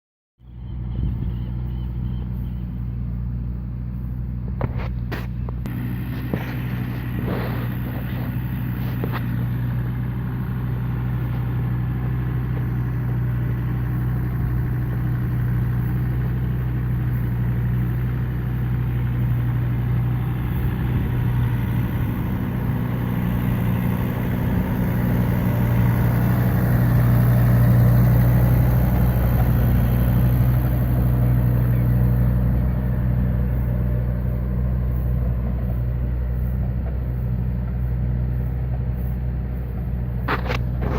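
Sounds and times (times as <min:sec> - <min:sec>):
engine humming steadily: 0:00.4 - 0:40.9.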